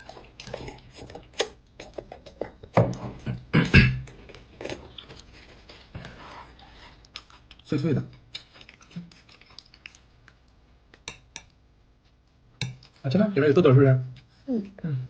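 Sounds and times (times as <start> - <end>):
crunchy snack being chewed: 8.3 - 10.0.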